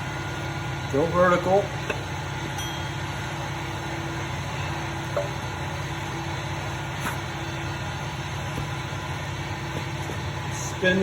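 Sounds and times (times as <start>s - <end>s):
machinery humming: 0.0s - 11.0s.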